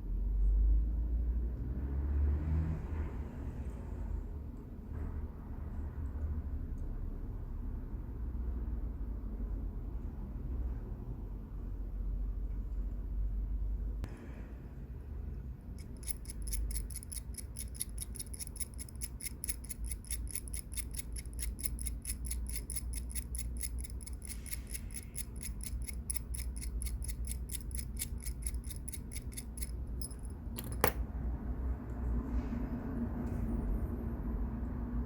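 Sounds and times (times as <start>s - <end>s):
rapid even ticking: 15.8s - 30.4s.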